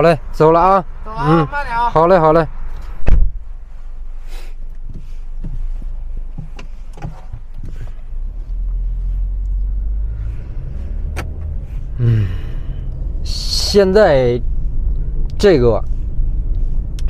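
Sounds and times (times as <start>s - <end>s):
vehicle engine rumbling: 0.0s - 17.0s.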